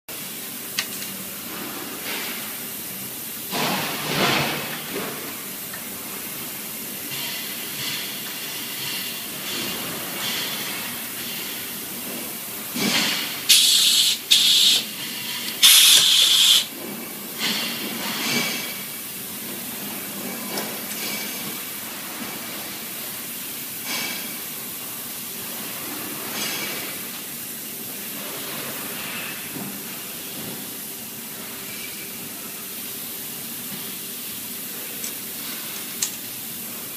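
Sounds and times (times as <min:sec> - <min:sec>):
pneumatic clamps hissing air: 0:12.8 - 0:16.7.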